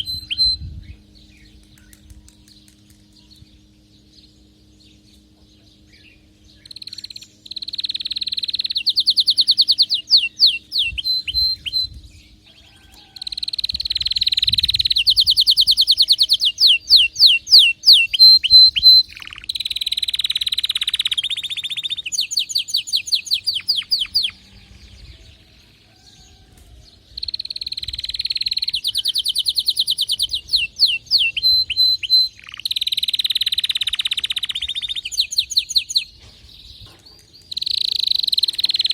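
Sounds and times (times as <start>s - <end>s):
canary singing trills: 0.0s - 38.9s.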